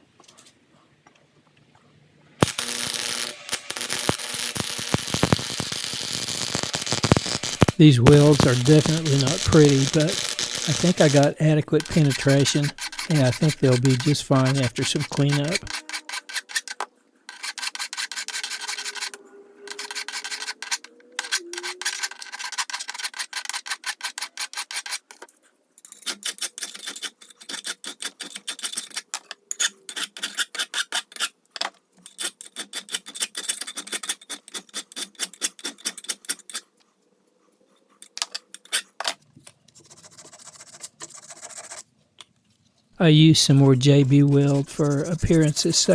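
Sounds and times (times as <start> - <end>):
rasping hand strokes on metal: 2.4 - 25.2, 25.9 - 31.4, 32.1 - 36.8, 43.3 - 45.9.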